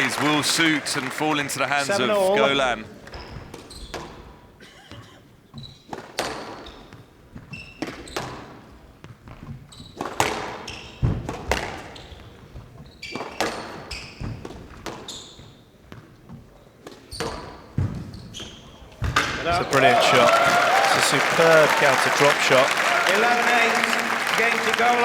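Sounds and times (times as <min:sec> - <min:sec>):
racquets smacking squash ball: 0:05.9 - 0:12.1
shoe squeaks: 0:07.5 - 0:08.3, 0:09.7 - 0:10.0, 0:11.9 - 0:14.4, 0:15.0 - 0:15.7, 0:17.1 - 0:19.0
ball hitting walls: 0:18.9 - 0:19.9.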